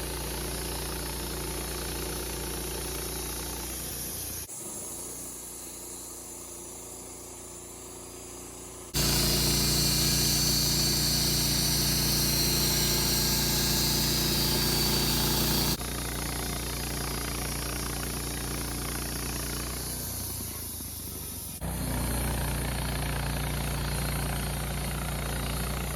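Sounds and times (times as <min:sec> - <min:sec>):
sawmill engine running: 0:00.0 - 0:04.5, 0:08.4 - 0:25.9
strong hiss: 0:09.0 - 0:15.8.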